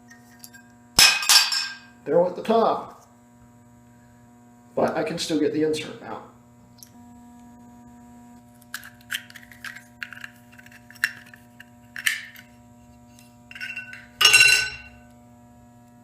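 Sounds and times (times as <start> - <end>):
ringing metal clink: 13.5 - 15.0.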